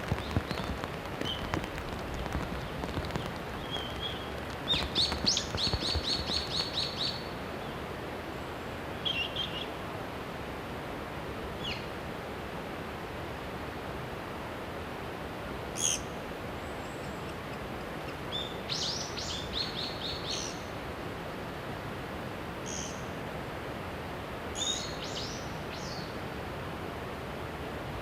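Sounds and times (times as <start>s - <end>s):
bird calls: 0.0s - 7.8s
steady background hiss: 0.0s - 28.0s.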